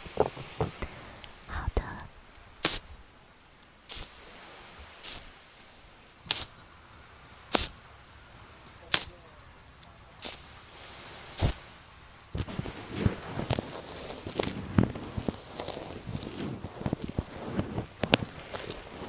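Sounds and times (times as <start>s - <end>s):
soft steady hiss: 0.0s - 19.0s
ear-cleaning tool swishing: 5.0s - 5.3s, 7.5s - 7.7s.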